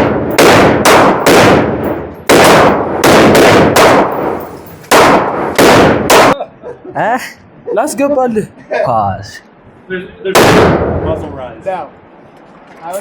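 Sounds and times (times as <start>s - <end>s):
gunshots with echo: 0.0s - 6.4s, 10.4s - 11.2s.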